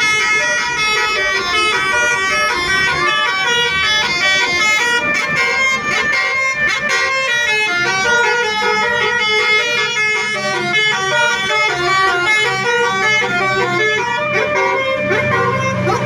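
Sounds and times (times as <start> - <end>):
bus engine running: 0.0 - 16.0
bus musical air horn melody: 0.0 - 16.0.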